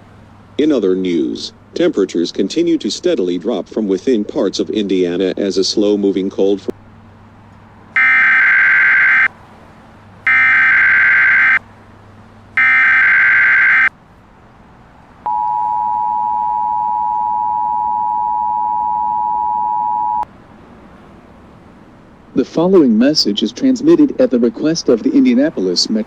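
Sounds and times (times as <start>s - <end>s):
screeching digital header tones: 8.0s - 9.3s, 10.3s - 11.6s, 12.6s - 13.9s
two-tone attention signal buzz: 8.0s - 9.3s, 10.3s - 11.6s, 12.6s - 13.9s, 15.3s - 20.2s.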